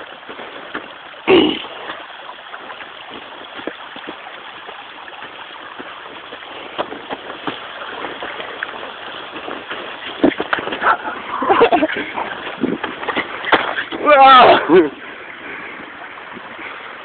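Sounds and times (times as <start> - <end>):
running water in a creek: 0.0 - 17.0
light knocks and crunches: 3.0 - 14.0.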